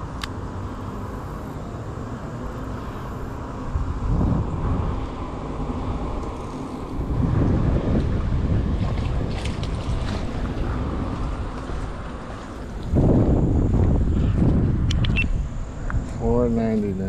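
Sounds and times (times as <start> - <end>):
wind noise on microphone: 3.4 - 17.0.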